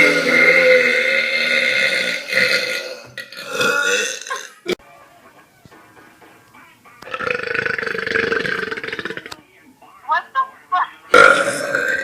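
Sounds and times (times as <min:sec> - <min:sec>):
person belching: 0:00.0 - 0:04.8, 0:07.0 - 0:09.4, 0:11.1 - 0:12.0.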